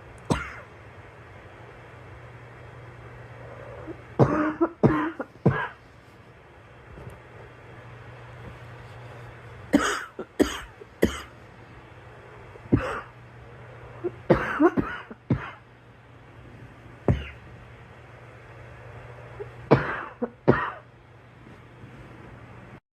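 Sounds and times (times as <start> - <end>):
girl coughing: 0.3 - 0.7, 4.2 - 5.8, 9.7 - 11.3, 12.8 - 13.2, 14.2 - 15.6, 17.1 - 17.4, 19.7 - 20.9.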